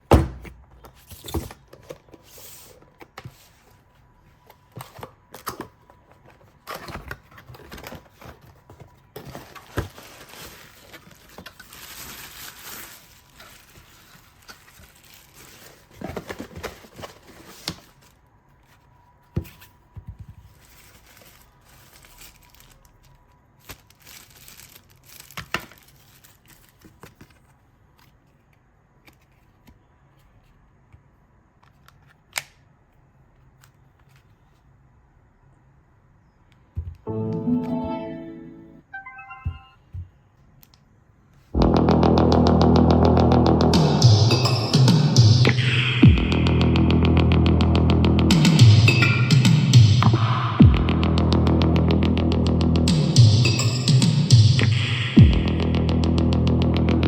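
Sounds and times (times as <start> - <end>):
packaging rustling: 0.8 - 28.3
packaging tearing and crinkling: 6.4 - 18.2, 20.4 - 27.5.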